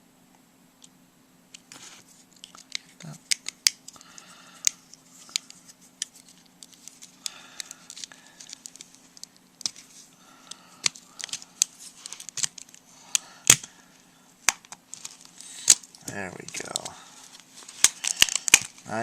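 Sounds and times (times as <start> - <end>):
plastic phone case snapping: 13.4 - 13.7, 17.8 - 18.8.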